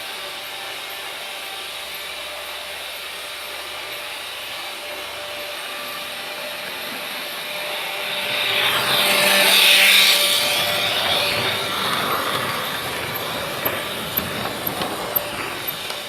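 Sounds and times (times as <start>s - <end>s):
freight train wheels on rail: 0.0s - 16.0s.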